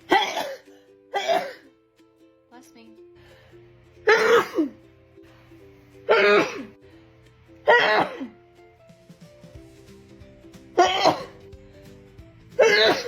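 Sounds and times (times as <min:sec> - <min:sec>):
background music with held notes: 0:00.0 - 0:13.0
woman sneezing: 0:04.0 - 0:04.8, 0:06.1 - 0:06.7, 0:07.7 - 0:08.3, 0:12.6 - 0:13.0.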